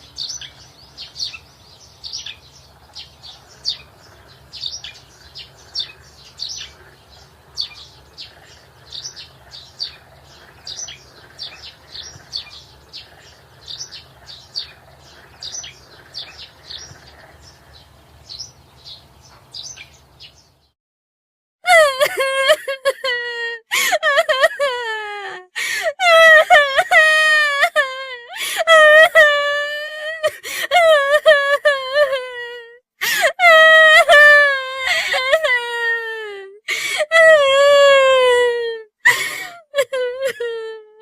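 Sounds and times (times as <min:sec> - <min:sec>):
birds chirping: 0:00.0 - 0:20.8.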